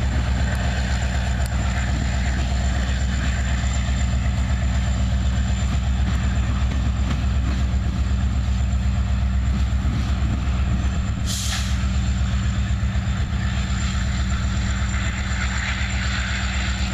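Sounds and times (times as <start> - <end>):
diesel locomotive drone: 0.0 - 16.9
burst of hiss: 11.2 - 12.0.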